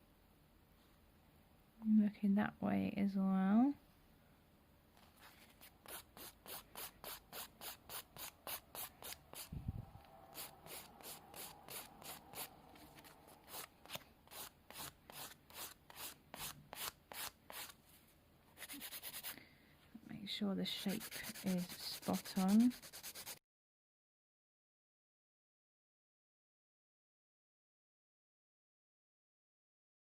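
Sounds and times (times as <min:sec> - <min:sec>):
nail file rasping: 0:05.2 - 0:09.5, 0:10.3 - 0:17.8, 0:18.6 - 0:19.4, 0:20.8 - 0:23.4.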